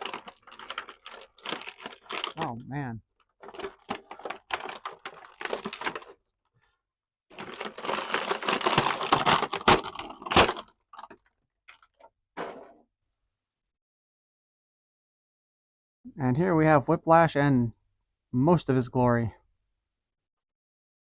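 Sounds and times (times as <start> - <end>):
plastic packaging crinkling: 0.0 - 2.5, 3.2 - 6.2, 7.3 - 11.9.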